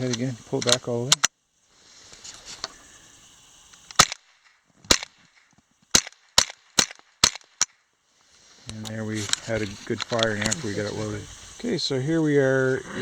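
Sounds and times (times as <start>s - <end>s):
rifle shots: 4.0s - 5.2s, 5.9s - 7.7s.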